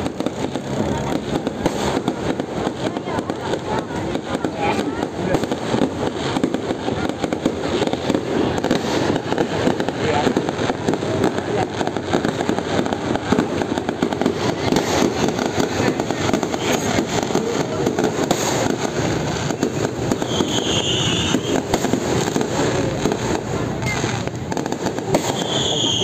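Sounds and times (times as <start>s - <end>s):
fireworks crackling and popping: 0.0s - 26.0s
firework whistle: 14.2s - 26.0s.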